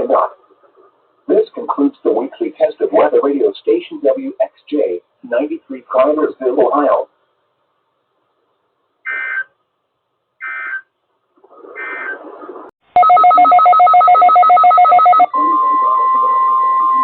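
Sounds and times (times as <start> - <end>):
steady single-pitch alarm tone: 13.0 - 17.0.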